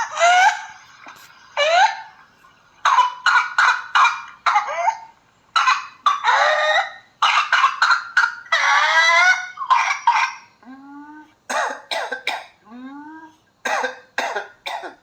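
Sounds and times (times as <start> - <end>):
hacking coughs: 11.5 - 12.6, 13.6 - 15.0.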